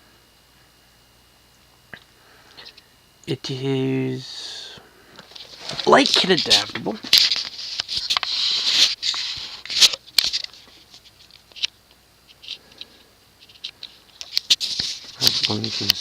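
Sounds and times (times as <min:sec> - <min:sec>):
rustling and scraping: 0:05.2 - 0:16.0.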